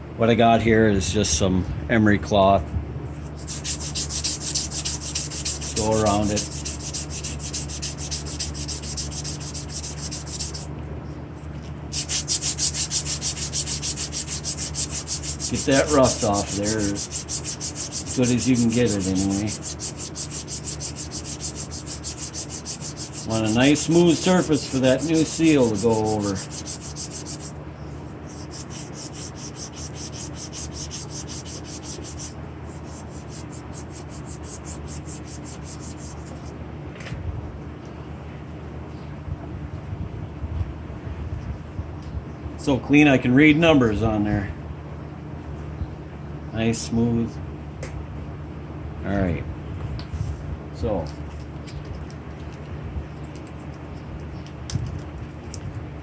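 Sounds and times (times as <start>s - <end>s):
steady low hum: 0.0s - 56.0s
emery cloth rubbing metal shaft: 3.3s - 10.7s, 11.9s - 27.6s, 28.3s - 36.4s.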